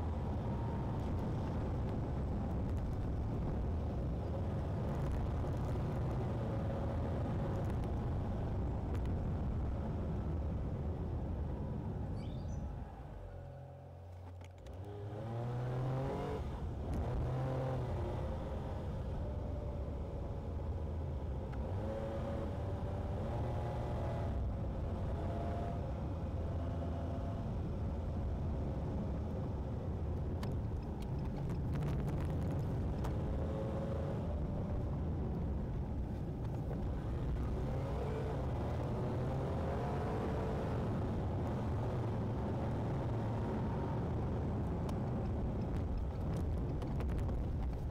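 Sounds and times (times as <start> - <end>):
road noise: 0.0 - 47.9.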